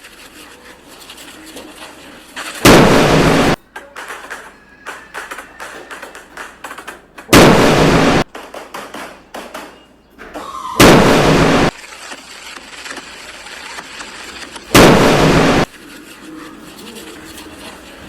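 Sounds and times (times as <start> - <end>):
fireworks crackling pops: 2.3 - 3.6, 7.3 - 8.8, 10.8 - 15.7
fireworks explosion bangs: 2.4 - 3.6, 7.3 - 9.0, 10.8 - 11.8, 14.5 - 15.7.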